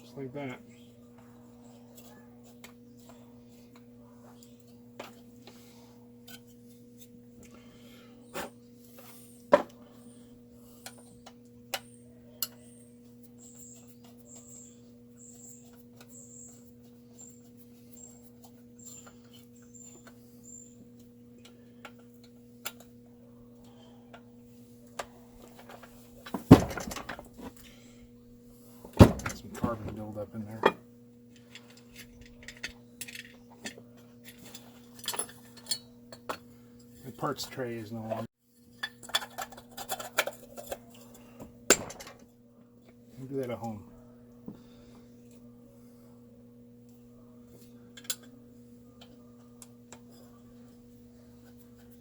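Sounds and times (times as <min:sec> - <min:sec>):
steady low hum: 0:00.0 - 0:52.0
tools and metal parts clicking: 0:30.6 - 0:36.4, 0:38.7 - 0:42.3, 0:47.9 - 0:48.3.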